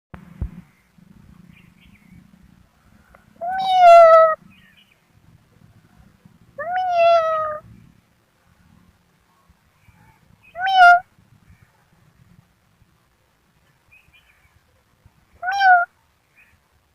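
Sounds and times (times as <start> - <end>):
kitten meowing: 3.4 - 4.4, 6.6 - 7.6, 10.6 - 11.0, 15.4 - 15.9.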